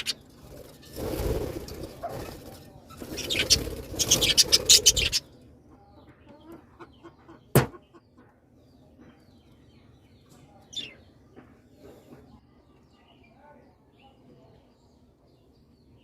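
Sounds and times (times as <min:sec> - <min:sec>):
colony of birds calling: 0:00.0 - 0:11.2.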